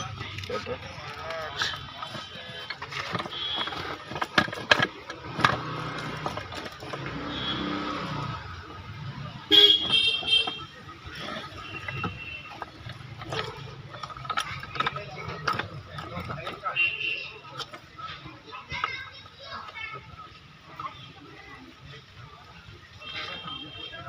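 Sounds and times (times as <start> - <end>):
street traffic: 0.0 - 24.0
vehicle horn: 3.2 - 4.0, 7.1 - 8.2, 9.5 - 12.6, 23.0 - 24.0.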